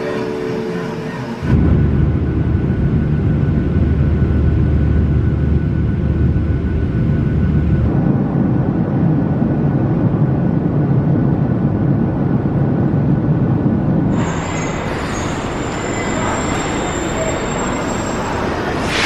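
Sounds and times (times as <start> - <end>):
hiss with high whine: 14.1 - 19.0.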